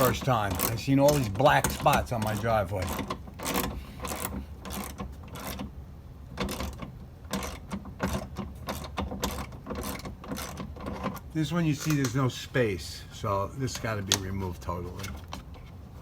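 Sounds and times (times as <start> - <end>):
ratchet wrench clicking: 0.0 - 5.7, 6.4 - 11.0.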